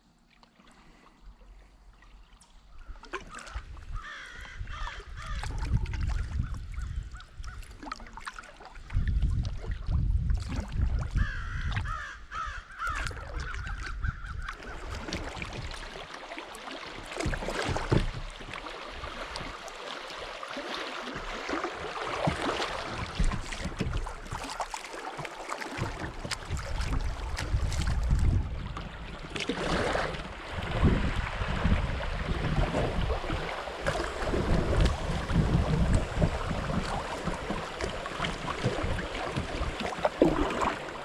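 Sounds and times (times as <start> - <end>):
water splashing around paddle: 0.0 - 41.0
wind on microphone: 3.5 - 7.8, 8.8 - 15.8, 26.2 - 40.8.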